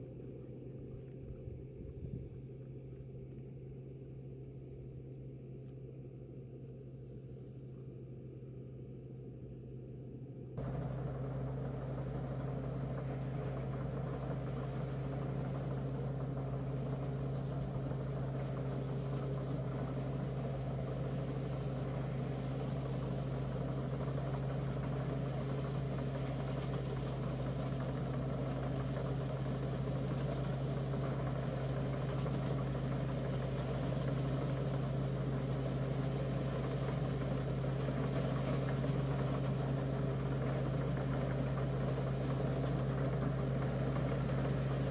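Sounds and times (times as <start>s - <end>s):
tractor engine droning: 10.5s - 44.9s.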